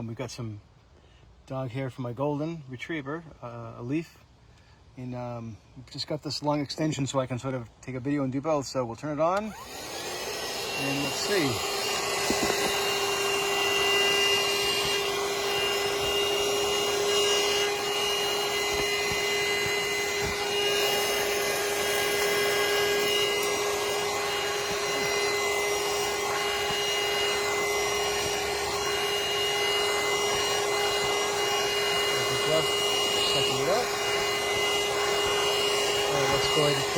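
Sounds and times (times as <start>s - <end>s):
portable vacuum cleaner running: 9.4s - 36.9s.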